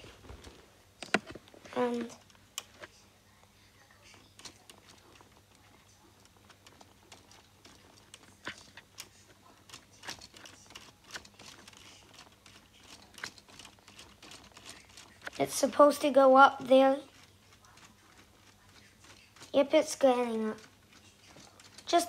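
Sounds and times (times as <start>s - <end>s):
plastic parts clicking: 4.2s - 15.4s, 20.6s - 22.0s.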